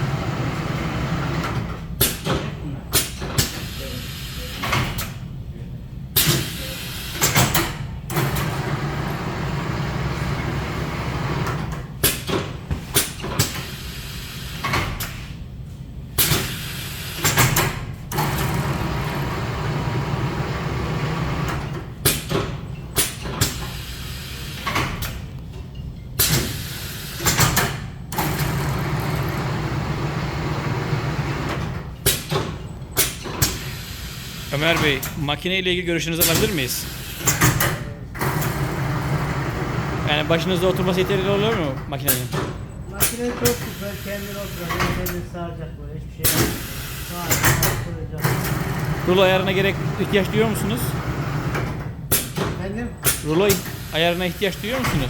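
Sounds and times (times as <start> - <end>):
motor hum: 18.1 - 23.0, 26.4 - 33.0
sharp mechanical clacks: 40.1 - 43.8, 46.2 - 55.0.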